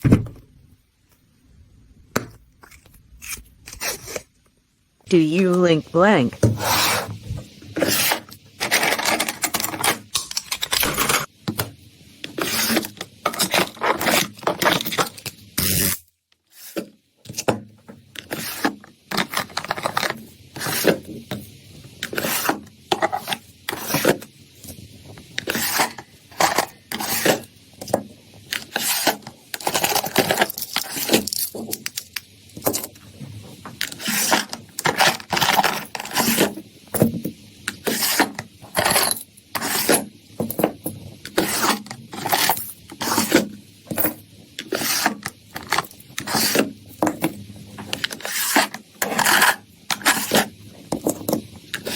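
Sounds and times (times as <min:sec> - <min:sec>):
rubbing and scraping: 0:02.4 - 0:04.3, 0:06.4 - 0:10.0, 0:12.3 - 0:16.9, 0:18.2 - 0:21.4, 0:25.4 - 0:27.5, 0:37.8 - 0:40.1, 0:44.6 - 0:47.2, 0:47.8 - 0:51.9.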